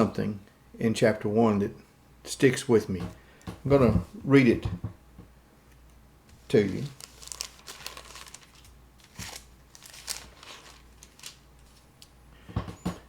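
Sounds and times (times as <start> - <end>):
soft thumps: 3.0 - 5.3
thin pages rustling: 6.3 - 12.1.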